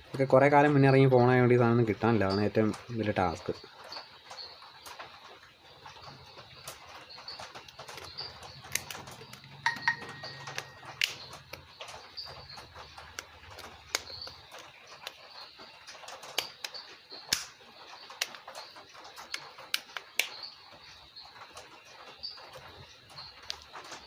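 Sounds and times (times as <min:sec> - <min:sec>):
faint high chirps: 0:05.8 - 0:23.9.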